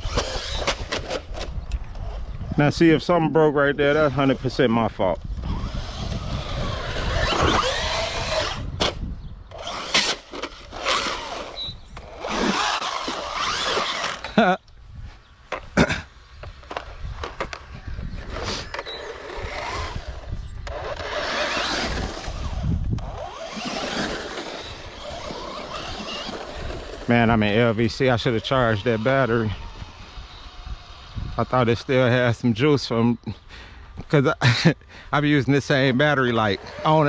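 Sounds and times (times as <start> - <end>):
toy truck electric motor whining: 0.0 - 1.5, 5.2 - 8.9, 9.5 - 14.5, 16.5 - 32.3, 36.2 - 37.0.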